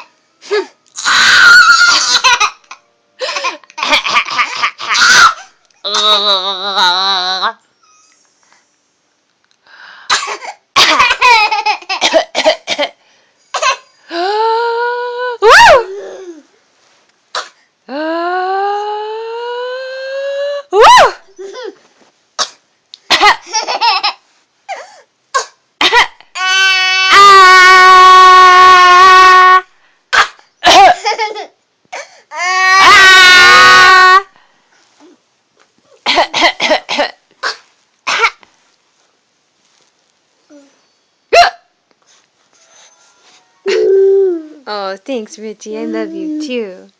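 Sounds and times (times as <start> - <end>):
short yelps: 30.1 - 31.0
voice holding high notes: 42.6 - 44.7, 45.7 - 46.8.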